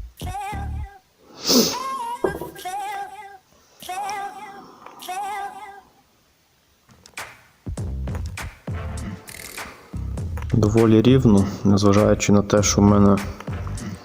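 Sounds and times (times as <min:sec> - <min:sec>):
high wavering vocal: 0:00.2 - 0:06.0
background music: 0:07.0 - 0:14.0.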